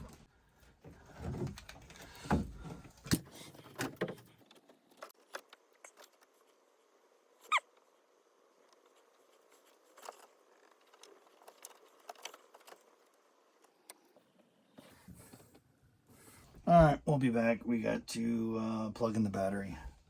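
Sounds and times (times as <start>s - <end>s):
clicks and rustles of wires: 0.0s - 6.8s, 8.6s - 14.4s.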